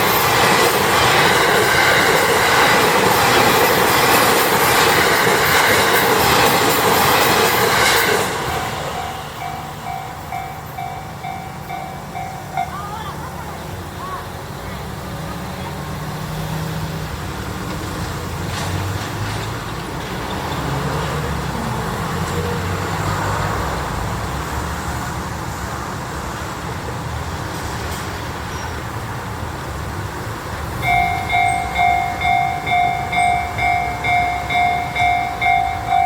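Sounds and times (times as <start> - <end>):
railroad crossing warning bell dinging: 0.0 - 16.0, 30.4 - 36.0.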